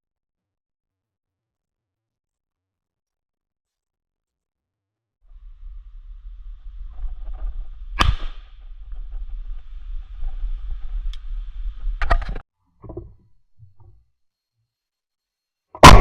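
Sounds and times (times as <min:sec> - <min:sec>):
low steady rumble: 0:05.3 - 0:12.4
shotgun shot: 0:08.0 - 0:08.6.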